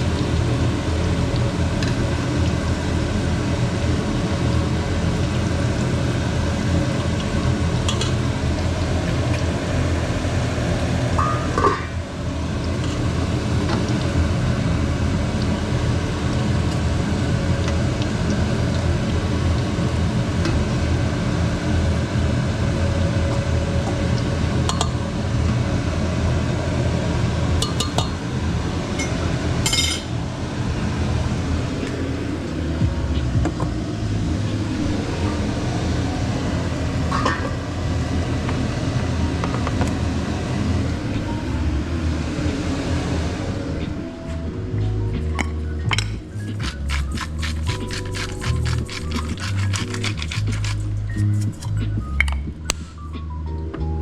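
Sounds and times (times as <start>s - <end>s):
eggs sizzling in a pan: 46.5s - 50.8s.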